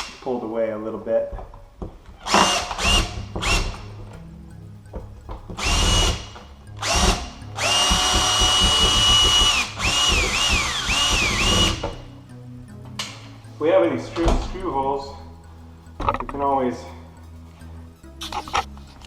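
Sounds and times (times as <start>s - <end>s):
cordless drill whining: 2.2s - 3.8s, 5.6s - 12.0s.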